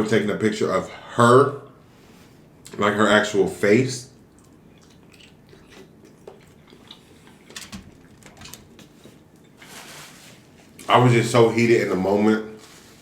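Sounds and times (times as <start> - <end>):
person chewing quietly: 4.2 - 9.6.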